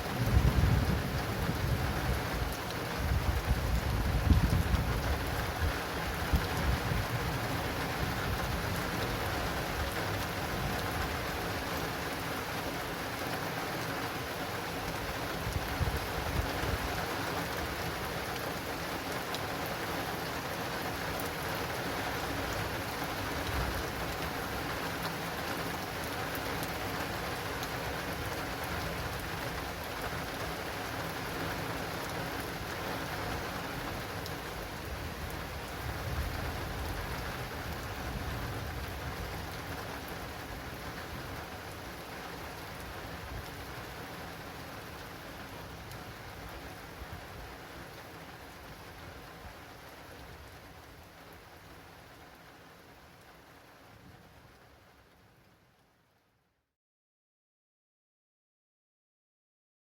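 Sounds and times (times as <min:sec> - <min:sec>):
low thunder rumble: 0:00.0 - 0:07.4
heavy rain on awning: 0:00.0 - 0:56.2.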